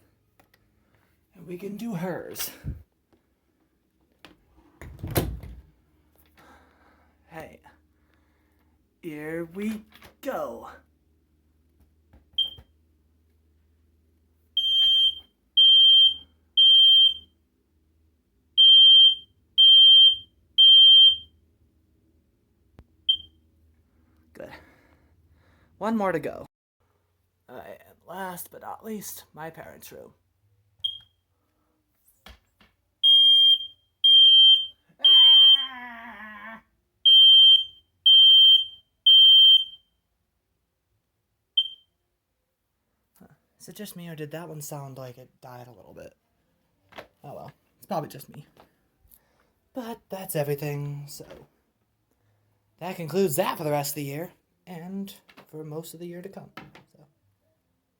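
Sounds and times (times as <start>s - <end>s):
smoke alarm beeping: 12.4s - 12.7s, 14.6s - 17.4s, 18.6s - 21.4s, 23.1s - 23.4s, 30.8s - 31.3s, 33.0s - 35.7s, 37.1s - 40.0s, 41.6s - 41.9s
smoke alarm chirp: 14.6s - 17.4s, 18.6s - 21.4s, 23.1s - 23.4s, 30.8s - 31.3s, 33.0s - 35.7s, 37.1s - 40.0s, 41.6s - 42.0s.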